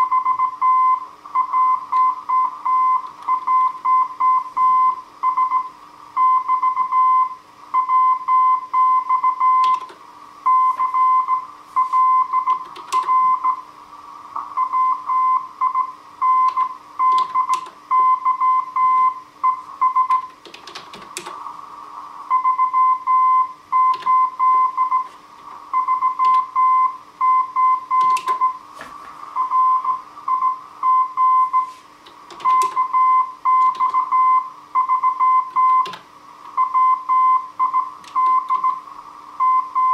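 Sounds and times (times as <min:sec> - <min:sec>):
morse code tone: 0:00.0 - 0:09.8, 0:10.5 - 0:13.6, 0:14.6 - 0:20.3, 0:22.3 - 0:25.1, 0:25.7 - 0:28.6, 0:29.4 - 0:31.8, 0:32.4 - 0:36.0, 0:36.6 - 0:38.8, 0:39.4 - 0:39.9
clicks and hiss: 0:20.1 - 0:22.0.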